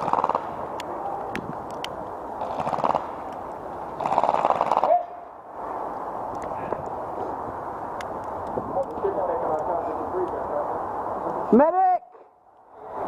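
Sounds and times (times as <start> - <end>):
airsoft guns firing bursts: 0.0 - 0.5.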